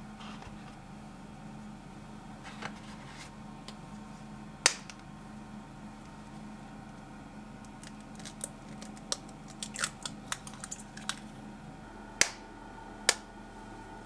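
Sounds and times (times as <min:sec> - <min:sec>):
low steady hum: 0:00.0 - 0:14.0
objects being handled: 0:07.7 - 0:11.4.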